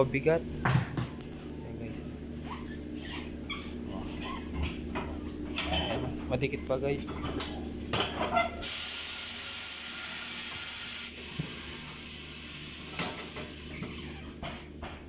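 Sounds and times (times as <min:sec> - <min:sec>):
compressed air hissing: 0:08.6 - 0:13.9.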